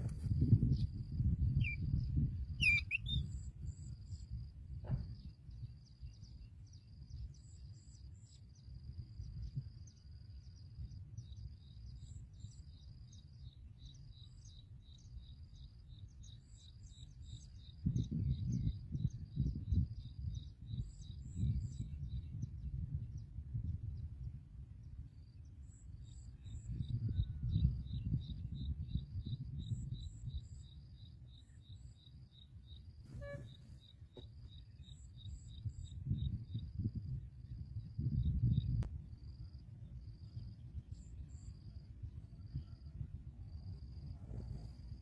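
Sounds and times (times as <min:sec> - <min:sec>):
small birds chirping: 0:00.0 - 0:04.4.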